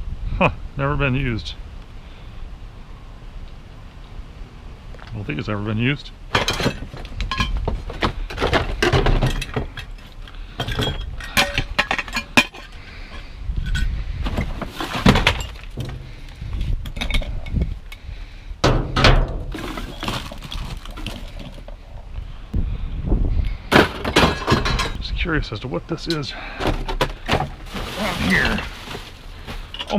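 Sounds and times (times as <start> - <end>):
junk clattering and clinking: 6.3 - 18.0, 18.6 - 21.8, 23.6 - 25.1, 26.0 - 29.9.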